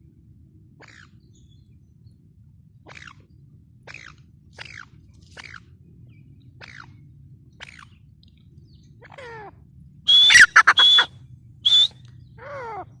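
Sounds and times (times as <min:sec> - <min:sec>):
shrill harsh bird calls: 0:10.1 - 0:13.0.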